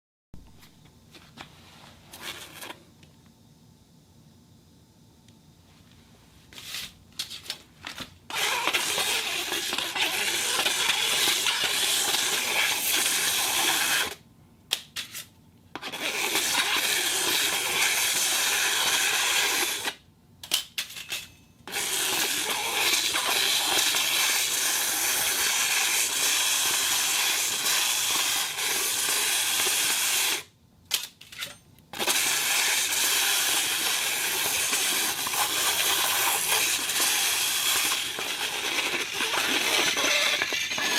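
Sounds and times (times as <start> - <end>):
iron plate scraping hiss: 32.0 - 40.9.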